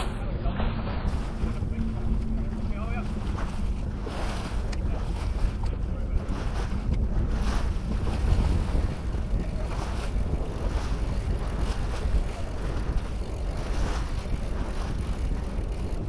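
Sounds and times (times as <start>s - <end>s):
water and waves rushing: 0.0s - 16.0s
wind buffeting microphone: 0.0s - 16.0s.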